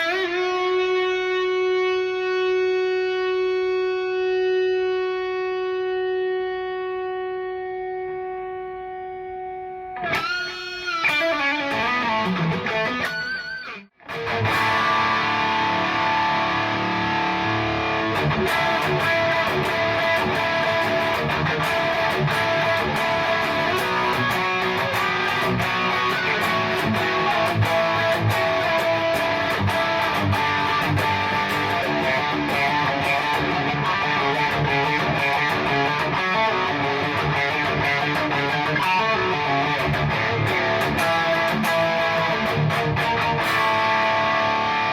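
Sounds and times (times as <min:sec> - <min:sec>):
electric guitar through amplifier: 0:00.0 - 0:44.9.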